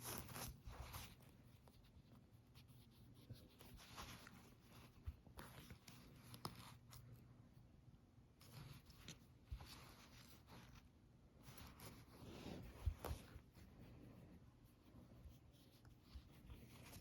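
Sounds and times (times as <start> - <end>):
faint rustling: 8.3 - 17.0.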